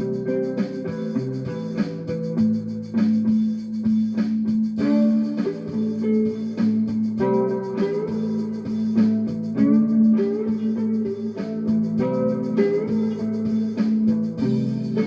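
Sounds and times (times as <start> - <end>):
plucked fretless string notes: 4.8 - 15.0
steady string drone: 4.8 - 15.0.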